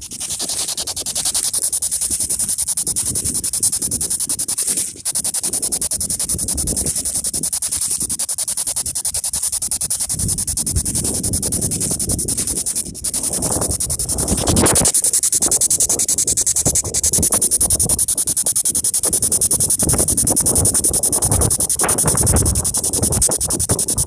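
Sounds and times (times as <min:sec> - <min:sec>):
low wind rumble: 0:09.9 - 0:24.0
chopped radio static: 0:11.8 - 0:15.5.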